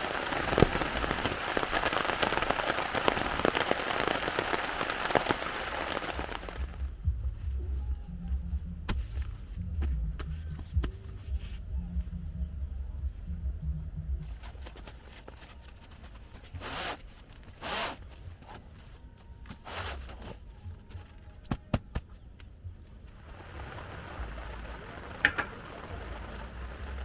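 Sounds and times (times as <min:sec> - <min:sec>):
rain hissing: 0:00.0 - 0:11.6, 0:22.8 - 0:27.0.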